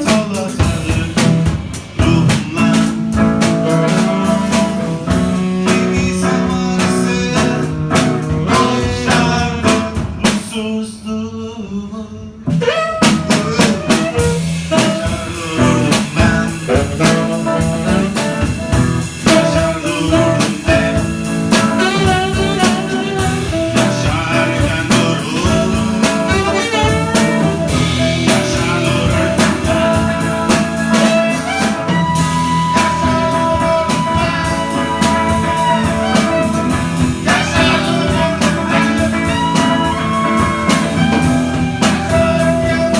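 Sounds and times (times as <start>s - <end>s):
saxophone playing: 2.1s - 9.8s, 12.5s - 42.9s
guitar playing: 12.5s - 42.9s.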